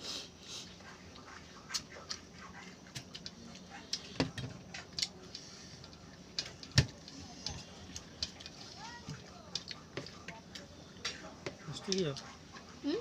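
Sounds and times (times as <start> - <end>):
eating by hand and chewing: 0.3 - 13.0.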